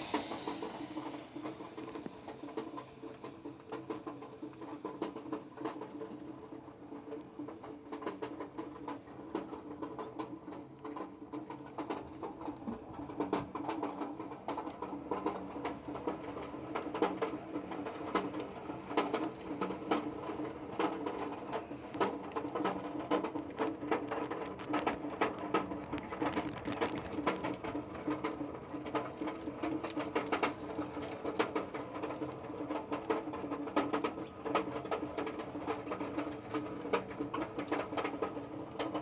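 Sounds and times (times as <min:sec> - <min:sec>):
raindrops tapping on metal pan: 0:10.9 - 0:39.0.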